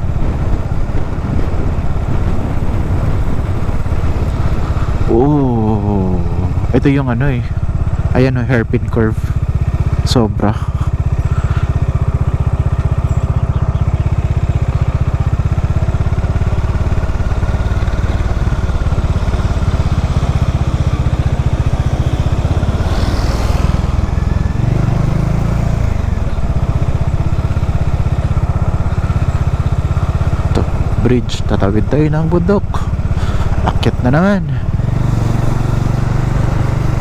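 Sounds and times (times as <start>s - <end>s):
motorcycle engine running: 0.0s - 37.0s.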